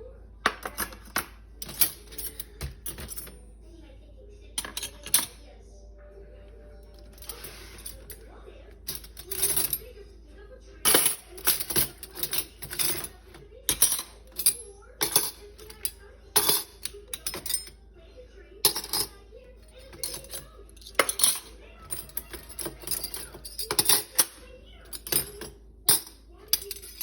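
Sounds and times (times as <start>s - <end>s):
silverware clinking: 0.4s - 3.4s, 4.6s - 5.4s, 8.8s - 10.0s, 10.8s - 17.8s, 18.6s - 27.0s.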